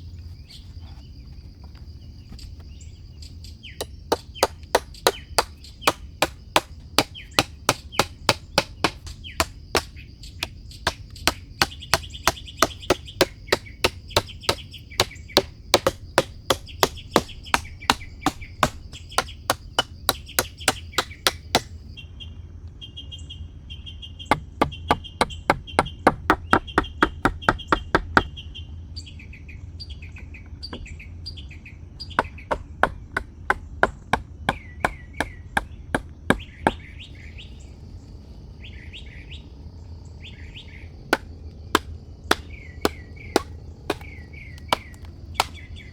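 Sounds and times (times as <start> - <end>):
hand tool strikes: 3.8 - 21.8, 41.8 - 44.1, 44.7 - 45.5.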